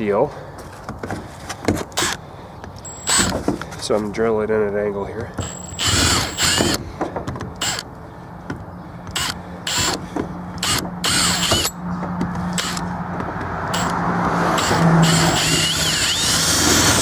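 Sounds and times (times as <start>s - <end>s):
power drill cutting plastic: 2.0s - 2.2s, 2.9s - 3.3s, 5.4s - 6.8s, 7.6s - 7.8s, 9.1s - 10.0s, 10.6s - 11.7s, 12.5s - 12.8s, 13.7s - 17.0s.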